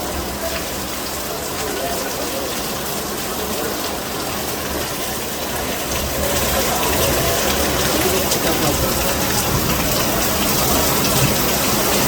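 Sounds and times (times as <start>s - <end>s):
heavy rain falling: 0.0s - 12.0s
water gushing: 0.0s - 12.0s.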